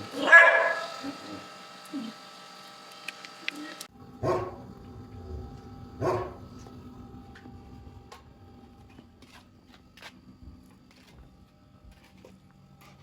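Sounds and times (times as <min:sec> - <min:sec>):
dog barking: 0:00.2 - 0:01.1, 0:04.2 - 0:04.6, 0:06.0 - 0:06.4.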